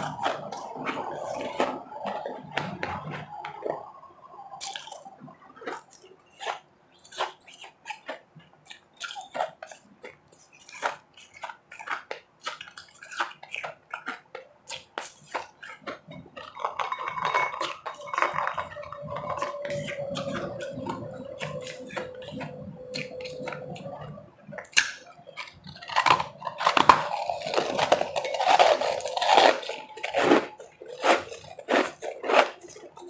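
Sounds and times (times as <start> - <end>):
chewing crunchy ice: 0.0 - 4.0, 4.6 - 33.0.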